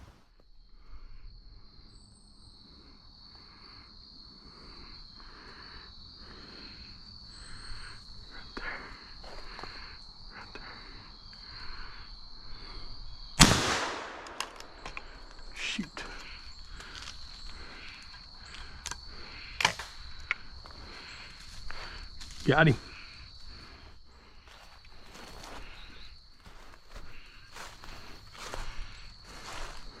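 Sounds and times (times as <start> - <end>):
shotgun firing: 13.4 - 14.6.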